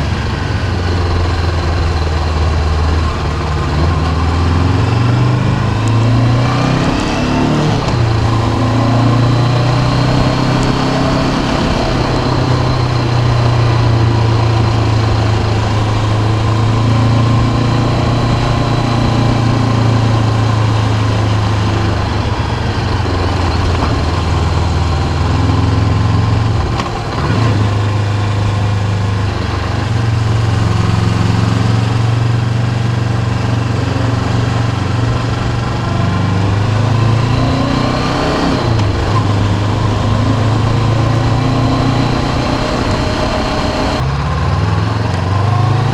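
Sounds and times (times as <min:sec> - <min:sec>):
motorcycle engine running: 0:00.0 - 0:45.9.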